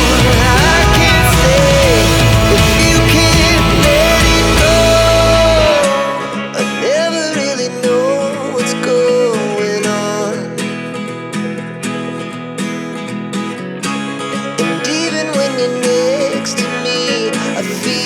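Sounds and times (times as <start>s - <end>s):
bending melody line: 0.0s - 6.9s
strummed acoustic guitar chords: 0.0s - 18.0s.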